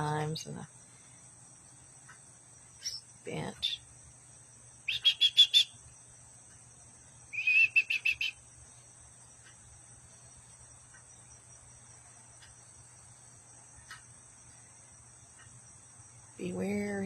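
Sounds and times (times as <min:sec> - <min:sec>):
rapid insect chirps: 0:00.0 - 0:17.0
high-pitched insect drone: 0:04.8 - 0:06.1, 0:07.3 - 0:08.5.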